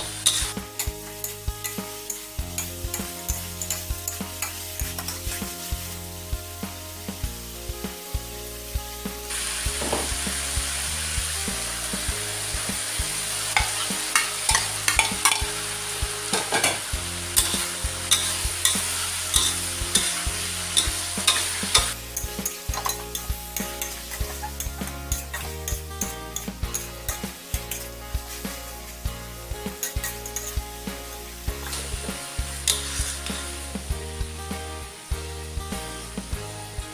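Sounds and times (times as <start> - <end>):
spatula scraping a metal pan: 0.0 - 5.7, 16.3 - 28.5, 29.6 - 30.6, 31.6 - 33.6
food sizzling in a pan: 0.0 - 36.9.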